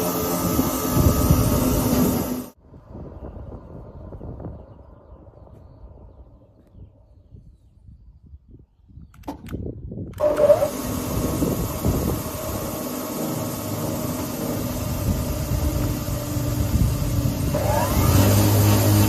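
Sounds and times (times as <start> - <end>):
spindle moulder motor running: 0.0 - 2.6, 10.2 - 19.0.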